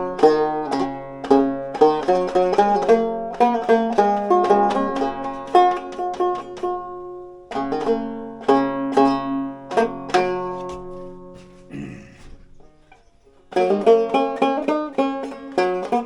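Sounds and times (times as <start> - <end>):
banjo plucked: 0.0 - 16.0.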